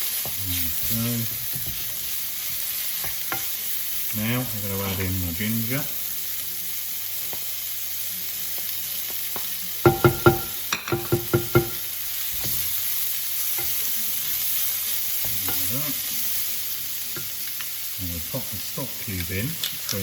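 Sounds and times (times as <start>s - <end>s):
food sizzling in a frying pan: 0.0s - 20.0s
utensil knocking against pan: 9.9s - 11.8s.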